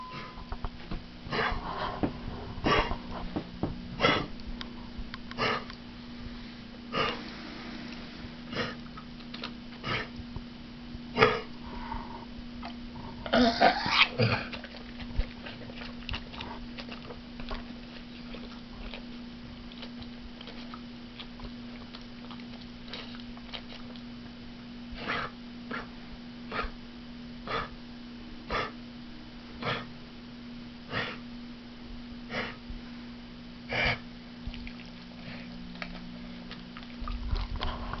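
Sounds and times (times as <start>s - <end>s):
steady low hum: 0.0s - 38.0s
pet coughing and hacking: 2.6s - 3.0s, 4.0s - 4.4s, 5.4s - 5.7s, 6.9s - 7.2s, 8.5s - 8.9s, 9.8s - 10.2s, 11.2s - 11.6s, 13.2s - 16.7s, 25.0s - 25.9s, 26.5s - 26.8s, 27.5s - 27.8s, 28.5s - 28.8s, 29.6s - 29.9s, 30.9s - 31.2s, 32.3s - 32.6s, 33.7s - 34.0s.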